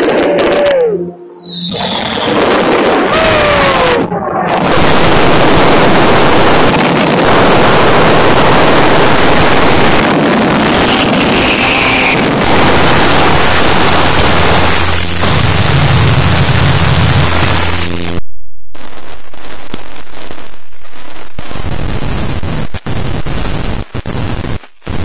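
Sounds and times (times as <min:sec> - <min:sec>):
fireworks exploding: 0:01.7 - 0:18.2, 0:18.8 - 0:25.0.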